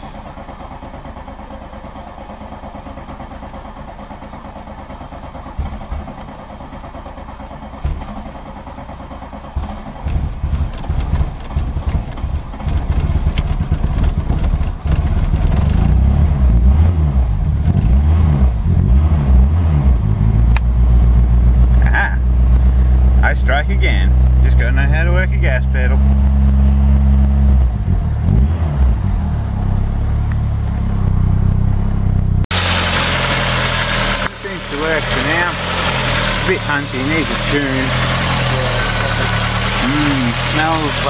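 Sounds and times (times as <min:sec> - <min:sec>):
engine cranking on starter: 0:00.0 - 0:16.0, 0:32.5 - 0:41.0
engine coughing and revving: 0:00.0 - 0:41.0.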